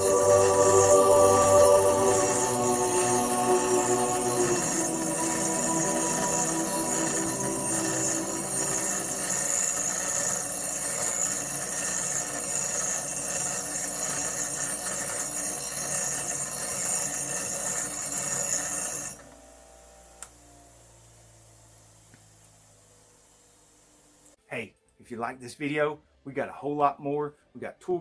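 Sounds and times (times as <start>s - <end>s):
bench grinder whining: 0.0s - 20.4s.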